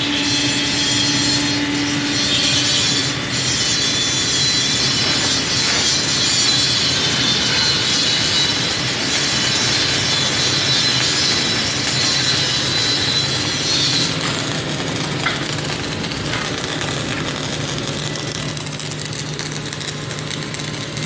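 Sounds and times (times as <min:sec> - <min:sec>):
welding arc crackling: 0:04.6 - 0:21.0.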